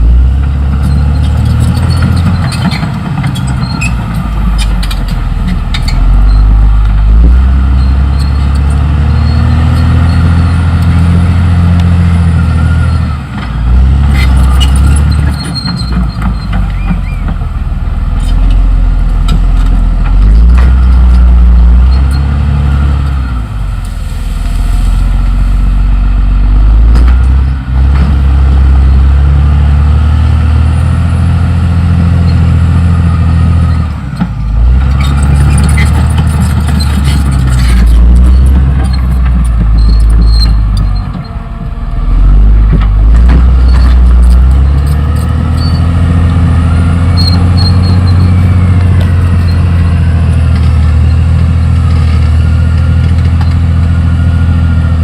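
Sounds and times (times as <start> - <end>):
bulldozer diesel engine: 0.0 - 55.0.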